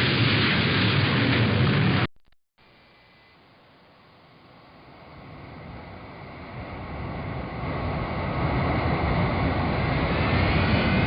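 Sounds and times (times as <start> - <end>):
faint high whine: 2.6 - 8.2
airplane engine rumbling: 2.8 - 11.0.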